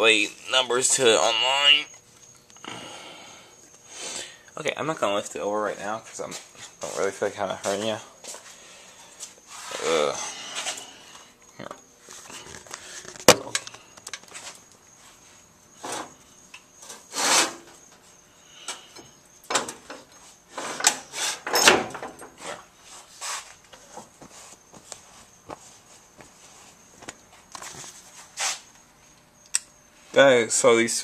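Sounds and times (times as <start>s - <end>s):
metal parts scraping and clunking: 16.8s - 17.8s, 18.7s - 24.0s.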